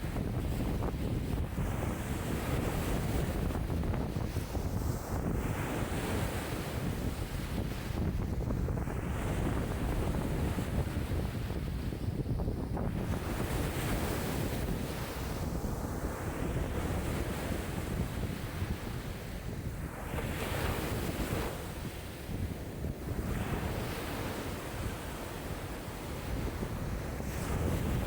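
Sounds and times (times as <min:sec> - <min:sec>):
wind rumbling on microphone: 0:00.0 - 0:28.0
lake waves washing: 0:12.8 - 0:28.0.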